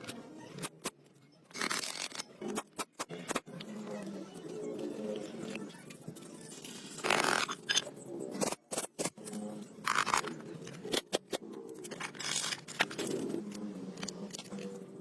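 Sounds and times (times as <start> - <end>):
handling clicks and scrapes: 6.6 - 15.0.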